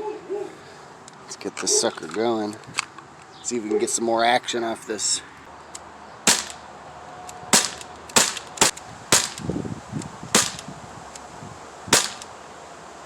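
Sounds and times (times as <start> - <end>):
pellet gun shots: 6.3 - 6.6, 7.5 - 9.4, 10.4 - 10.7, 11.9 - 12.4.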